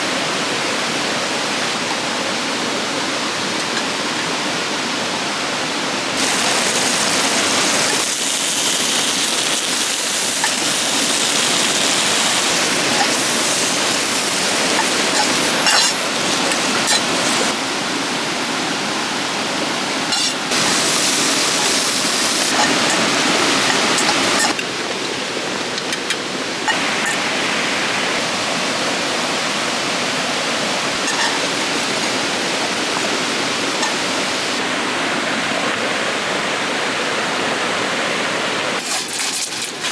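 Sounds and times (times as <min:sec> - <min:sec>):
river water rushing over rocks: 0:00.0 - 0:39.9.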